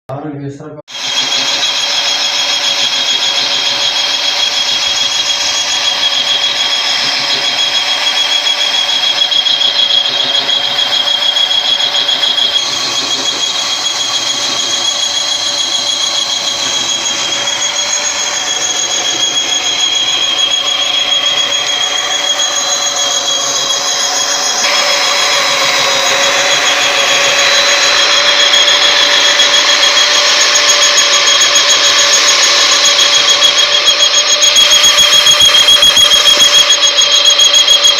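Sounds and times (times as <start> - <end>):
honing tool squealing: 0.9 - 37.9.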